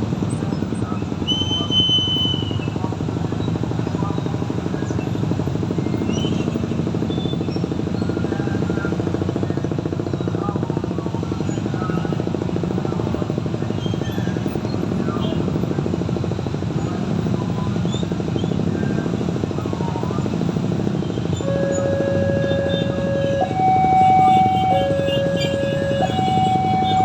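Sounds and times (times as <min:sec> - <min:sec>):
low mechanical rumble: 0:20.6 - 0:27.0.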